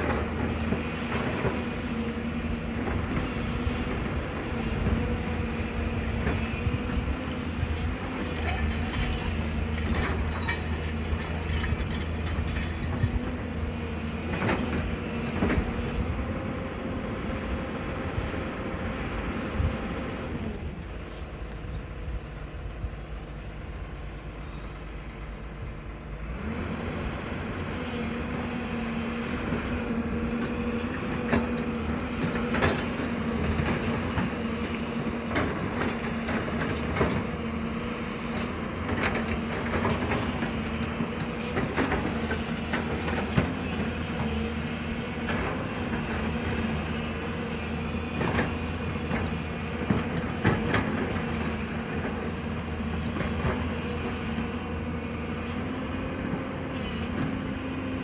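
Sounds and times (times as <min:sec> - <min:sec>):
excavator engine humming: 0:00.0 - 0:58.0
metal and rock clanks: 0:08.3 - 0:13.3.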